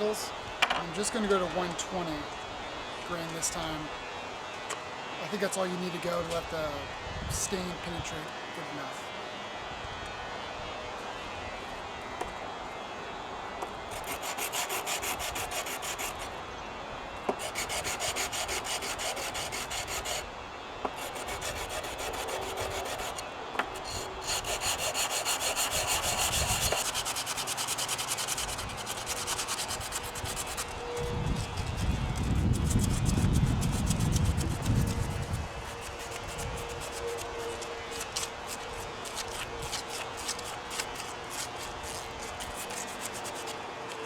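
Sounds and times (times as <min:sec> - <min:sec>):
sandpaper rubbing on wood: 0:13.9 - 0:16.3, 0:17.4 - 0:20.3, 0:21.0 - 0:44.0.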